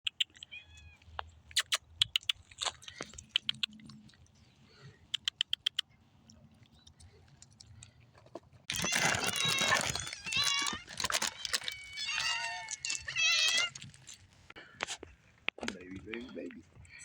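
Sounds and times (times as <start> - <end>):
cats crunching food: 0.1 - 16.6.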